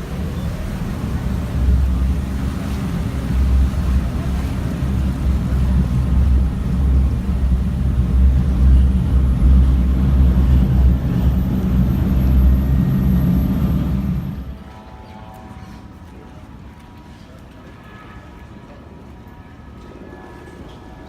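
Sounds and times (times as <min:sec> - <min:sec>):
engine low rumble: 0:00.0 - 0:14.8.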